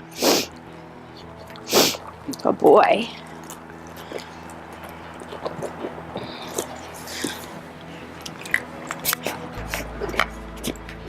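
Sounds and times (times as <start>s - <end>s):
faint background music: 0.0s - 11.0s
puppy chewing crunchily: 3.2s - 11.0s.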